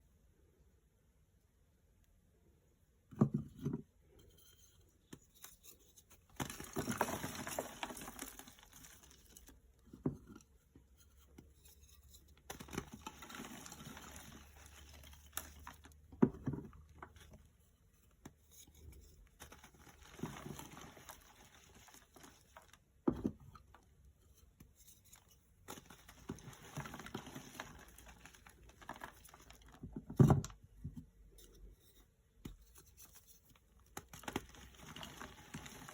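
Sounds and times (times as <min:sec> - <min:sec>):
chalk crumbling: 0:05.4 - 0:09.6, 0:11.0 - 0:16.0, 0:24.4 - 0:29.8.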